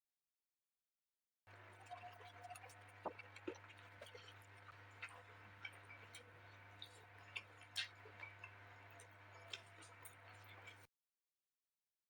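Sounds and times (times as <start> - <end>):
low electrical hum: 1.5 - 10.9
soft eating clicks and smacks: 1.8 - 10.9.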